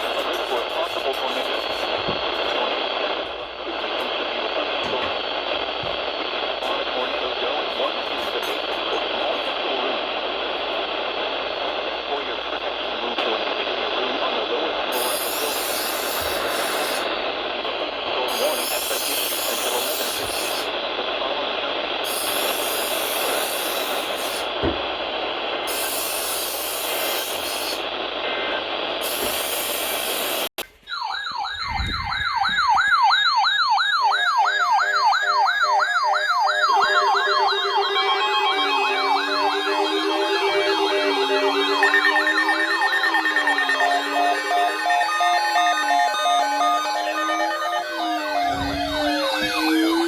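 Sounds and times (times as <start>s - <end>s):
electronic siren warbling: 30.7s - 50.0s
synthesized music tones: 34.2s - 50.0s.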